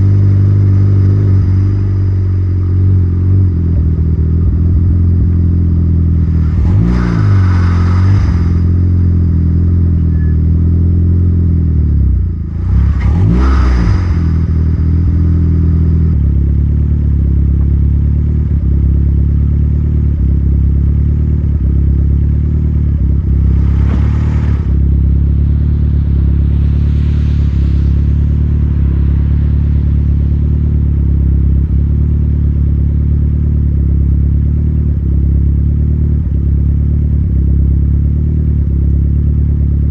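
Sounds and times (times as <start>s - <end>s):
car engine running: 0.0s - 39.9s
turbo hiss: 6.2s - 9.5s, 23.3s - 31.4s.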